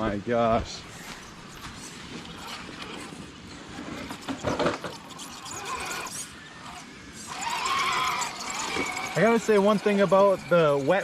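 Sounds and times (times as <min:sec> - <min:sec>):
electric motor whining: 0:00.8 - 0:11.0
knocks and scrapes on rock: 0:01.0 - 0:06.2.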